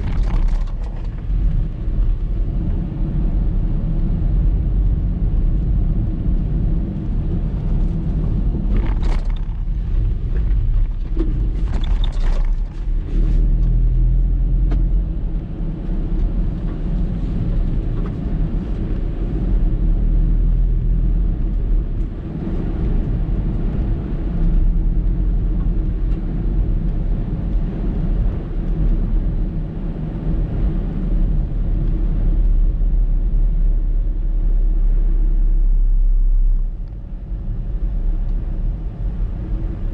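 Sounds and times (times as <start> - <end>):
wind buffeting microphone: 0.0 - 14.1.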